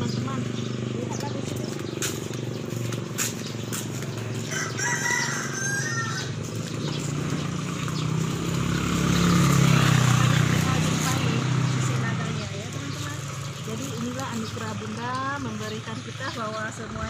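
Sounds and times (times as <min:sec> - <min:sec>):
low engine hum: 0:00.0 - 0:17.0
rooster crowing: 0:04.4 - 0:06.6.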